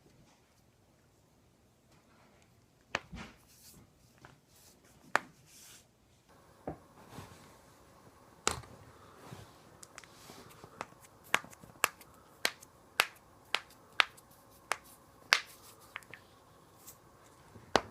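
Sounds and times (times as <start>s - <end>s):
back cracking pops: 9.8s - 16.2s.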